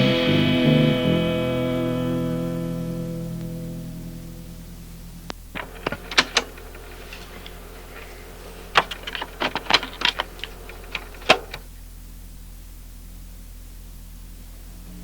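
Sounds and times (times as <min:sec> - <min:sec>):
electrical hum: 0:00.0 - 0:15.0
tape hiss: 0:00.0 - 0:15.0
clicks and knocks: 0:05.6 - 0:11.7.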